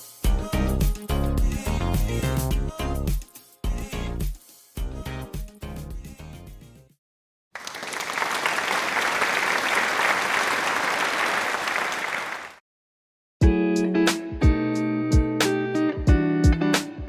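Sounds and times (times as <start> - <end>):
applause: 7.6 - 12.6.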